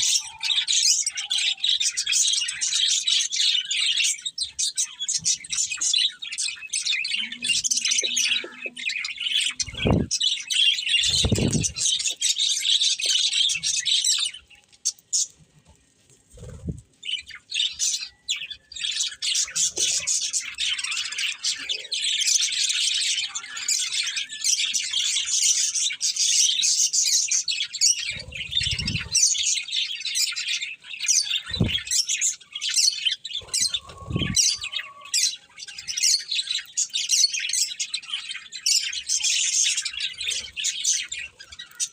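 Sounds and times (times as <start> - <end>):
budgerigars chattering: 4.8 - 14.2.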